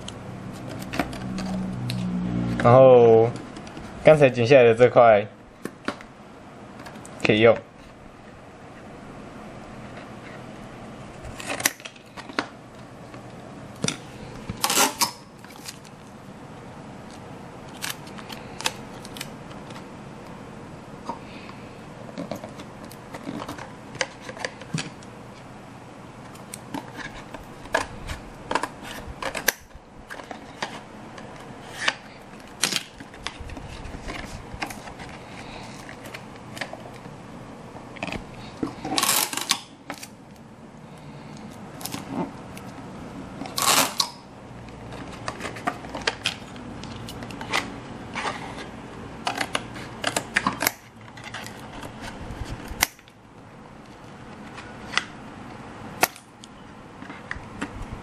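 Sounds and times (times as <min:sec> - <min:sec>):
rustling scrapes: 0:33.1 - 0:36.2, 0:47.4 - 0:48.8.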